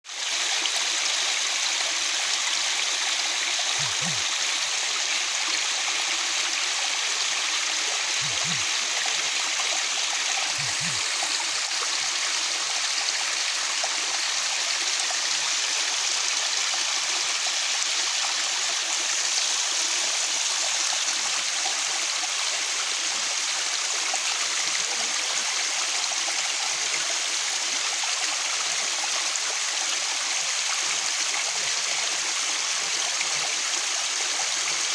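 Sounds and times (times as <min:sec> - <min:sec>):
waterfall rushing: 0:02.2 - 0:06.2, 0:07.2 - 0:13.1.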